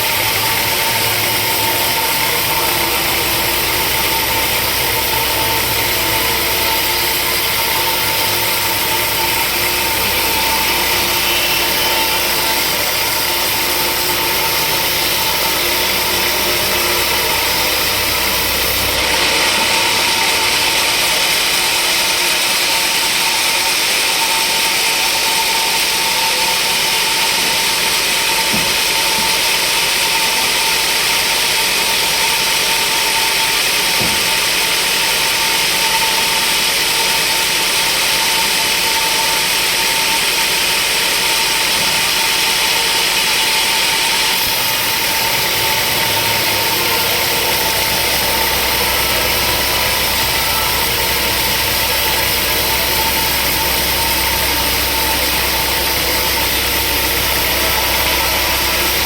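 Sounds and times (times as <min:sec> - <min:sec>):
high hiss: 0:00.0 - 0:23.0, 0:41.3 - 0:59.0
machinery hum: 0:00.0 - 0:59.0.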